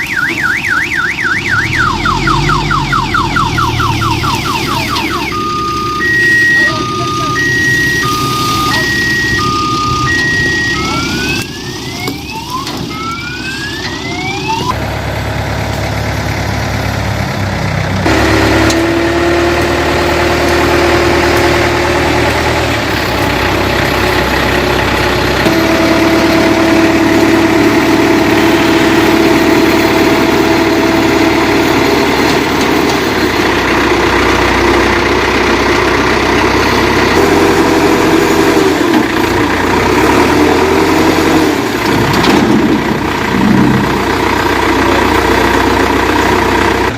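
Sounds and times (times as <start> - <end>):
reversing alarm beeping: 0.0 - 14.8, 18.1 - 46.6
diesel engine running: 0.0 - 46.9
rising sweeping tones: 0.8 - 14.8, 41.5 - 45.8
high whine: 42.2 - 45.6.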